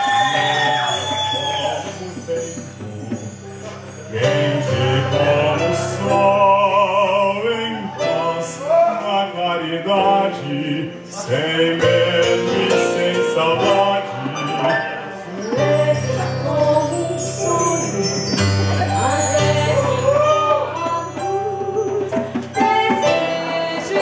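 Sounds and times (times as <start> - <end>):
instrumental accompaniment: 0.0 - 24.0
person singing with vibrato: 0.0 - 24.0.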